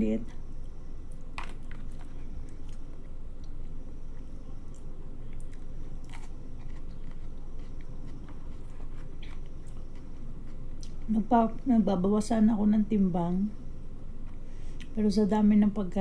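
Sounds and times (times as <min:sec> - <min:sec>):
low background hum: 0:00.0 - 0:16.0
person chewing food: 0:01.1 - 0:11.1.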